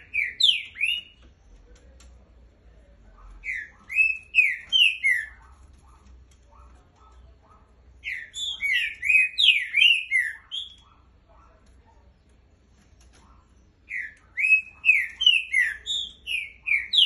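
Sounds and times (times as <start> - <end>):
bird singing whistled notes: 8.0 - 10.8, 13.9 - 17.0.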